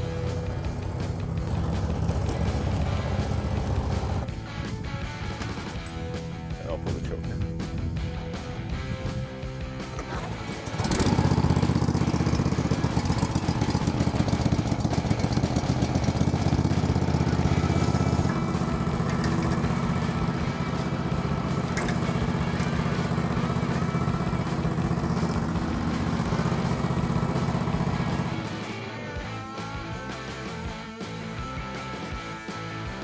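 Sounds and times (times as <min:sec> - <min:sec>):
sawmill gasoline engine running: 0:00.0 - 0:04.4, 0:09.8 - 0:28.8.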